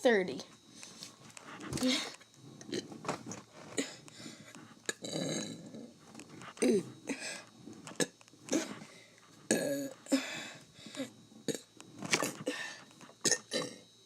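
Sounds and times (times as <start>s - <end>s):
man burping: 4.9s - 6.0s, 6.6s - 7.2s, 7.9s - 8.7s, 9.5s - 10.2s, 11.5s - 12.6s, 13.2s - 13.9s.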